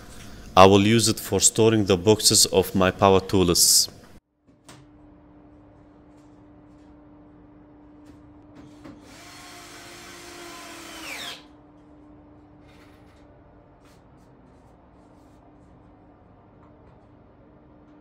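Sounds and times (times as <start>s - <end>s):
power drill driving a screw: 9.0s - 11.5s.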